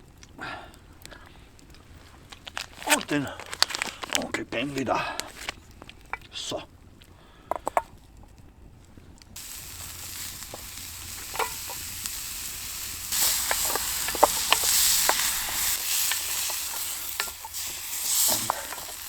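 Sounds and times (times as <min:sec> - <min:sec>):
pops and crackles: 0:00.0 - 0:19.0
bacon sizzling in a pan: 0:09.4 - 0:19.0.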